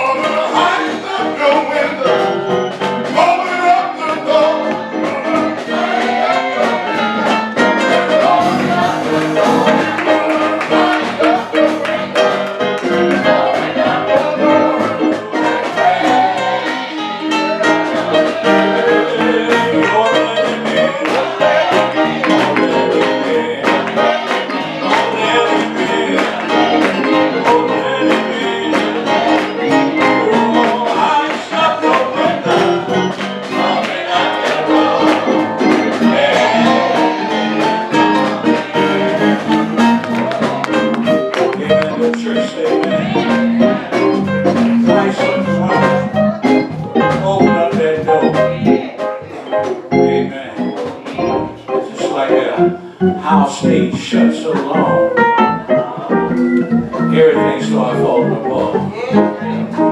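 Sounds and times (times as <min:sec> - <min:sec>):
gospel singing over instruments: 0:00.0 - 0:59.9
steady drum beat: 0:04.4 - 0:17.0, 0:17.6 - 0:51.7.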